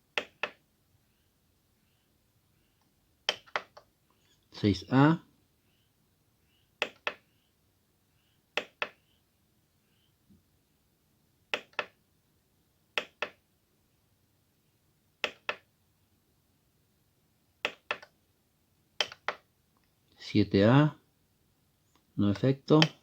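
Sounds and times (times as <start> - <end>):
keyboard button clicks: 13.0 - 13.4.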